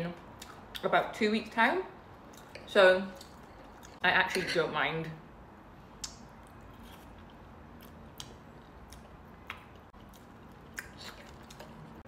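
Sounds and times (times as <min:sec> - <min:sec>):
chewing food: 0:06.4 - 0:12.0.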